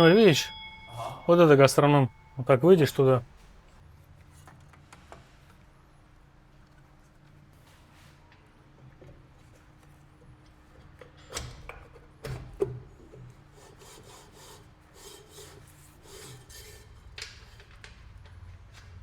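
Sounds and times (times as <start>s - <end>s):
sharp metal knocks: 0.0s - 3.2s.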